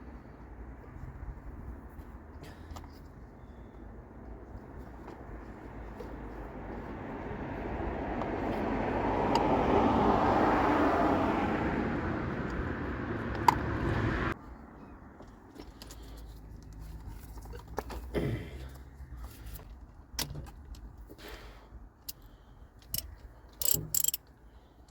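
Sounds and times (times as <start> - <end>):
road vehicle passing by: 5.2 - 15.1.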